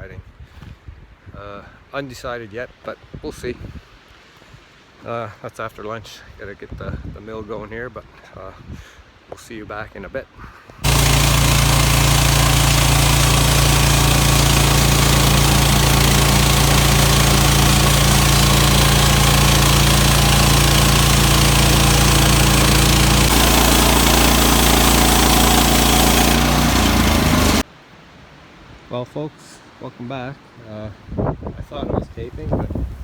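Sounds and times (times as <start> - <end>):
small gasoline engine running: 10.8 - 27.7.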